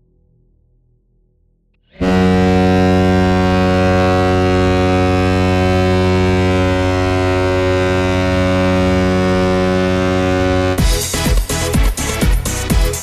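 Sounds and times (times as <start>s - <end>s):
deep air horn blast: 2.0s - 11.3s.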